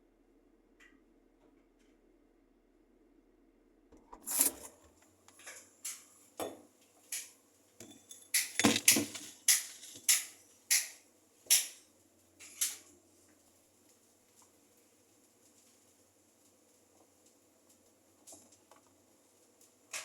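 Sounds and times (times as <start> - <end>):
hard objects knocking and clinking: 7.8 - 10.9.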